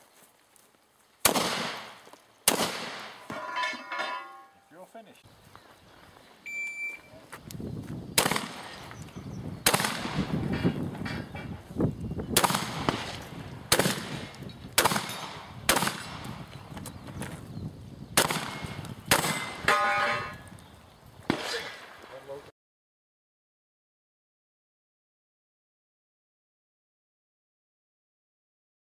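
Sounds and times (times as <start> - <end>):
shotgun shots: 1.2 - 3.4, 8.2 - 8.8, 9.6 - 10.5, 12.3 - 16.4, 18.2 - 20.4, 21.3 - 22.2
metallic ringing: 3.2 - 4.8, 19.3 - 20.4.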